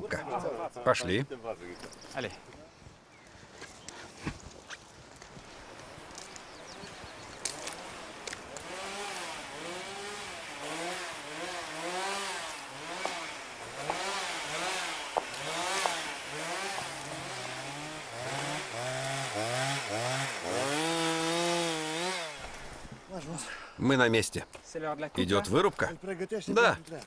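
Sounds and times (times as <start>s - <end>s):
chainsaw revving: 6.2s - 22.6s.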